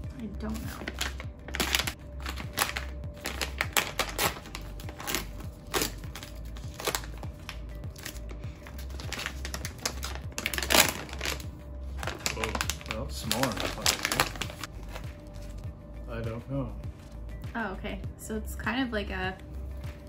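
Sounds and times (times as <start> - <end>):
background music: 0.0 - 20.0
plastic wrapper crinkling: 0.6 - 15.6.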